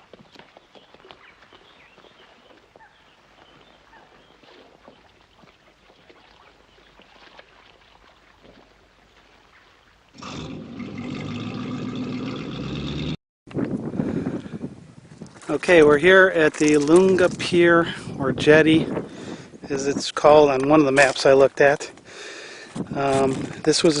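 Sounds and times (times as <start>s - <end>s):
faint trickling water: 0.3s - 12.6s
motorboat engine running: 10.2s - 13.2s.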